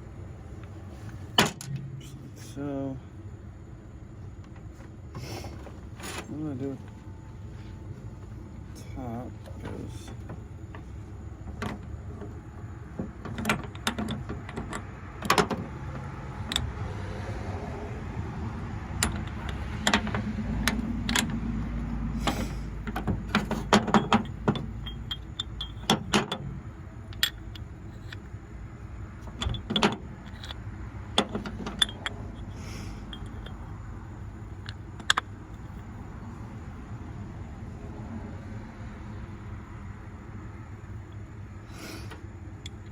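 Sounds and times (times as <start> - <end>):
steady low rumble: 0.0 - 41.7
metal parts clicking and clinking: 1.3 - 2.2, 11.5 - 16.8, 19.0 - 21.4, 22.2 - 28.4, 29.2 - 33.7, 34.6 - 35.8.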